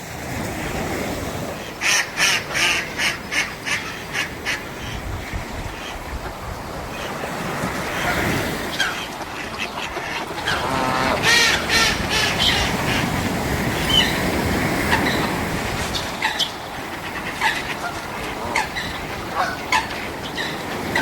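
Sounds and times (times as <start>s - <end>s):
waves washing onto beach: 0.0s - 21.0s
birds calling: 1.7s - 21.0s.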